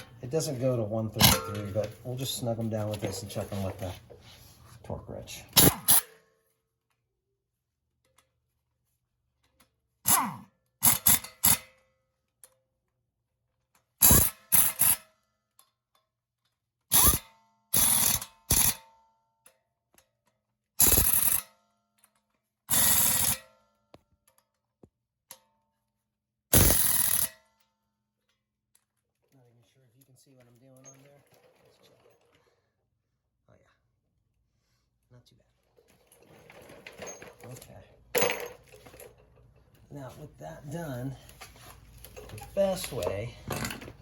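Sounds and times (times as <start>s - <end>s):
impact wrench rattling bursts: 5.6s - 6.0s, 10.1s - 11.6s, 14.0s - 15.0s, 20.8s - 21.4s, 22.7s - 23.4s, 26.5s - 27.3s.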